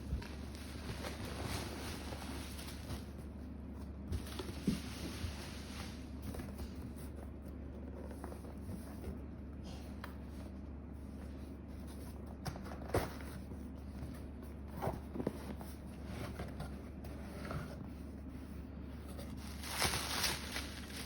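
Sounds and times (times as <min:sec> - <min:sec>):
packaging rustling and scraping: 0:00.0 - 0:09.2, 0:18.9 - 0:21.0
steady low hum: 0:00.0 - 0:21.0.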